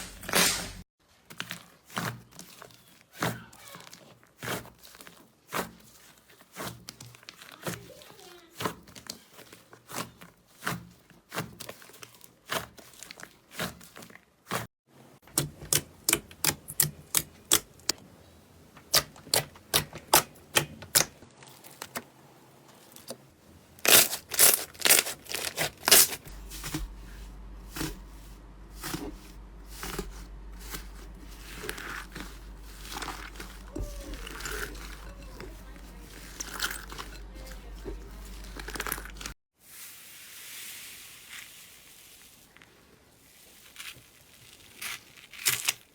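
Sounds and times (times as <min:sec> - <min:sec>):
low steady hum: 0:22.0 - 0:39.4.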